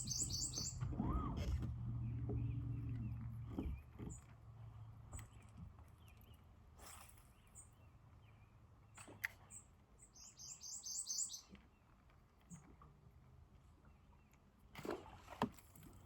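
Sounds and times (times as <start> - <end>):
faint low hum: 0.0 - 6.4.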